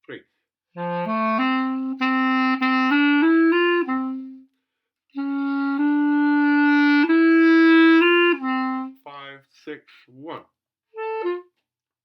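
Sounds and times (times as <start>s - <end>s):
solo clarinet playing: 0.8s - 4.5s, 5.2s - 9.0s, 10.9s - 11.6s.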